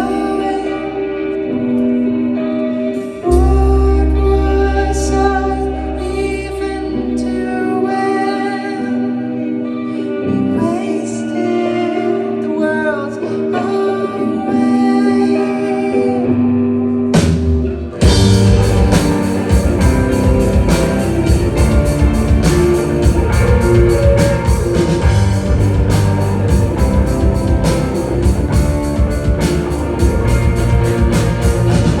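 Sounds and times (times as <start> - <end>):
rock band playing: 16.9 - 32.0.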